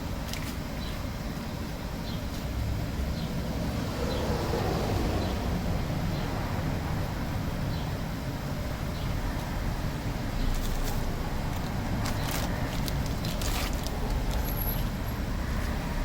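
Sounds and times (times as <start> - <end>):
distant traffic rumble: 0.0 - 16.0.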